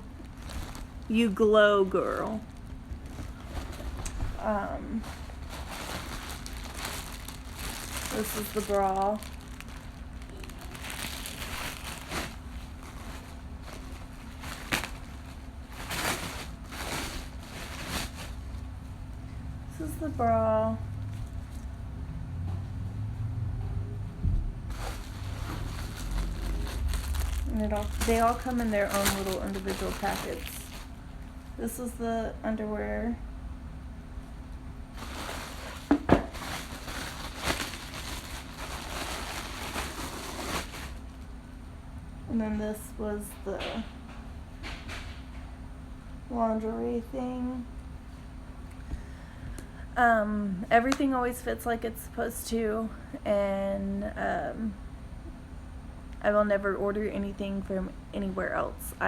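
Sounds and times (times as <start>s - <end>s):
packaging rustling and crinkling: 0.0s - 1.4s, 2.1s - 18.6s, 24.7s - 31.0s, 35.0s - 41.3s
steady low hum: 0.0s - 59.0s.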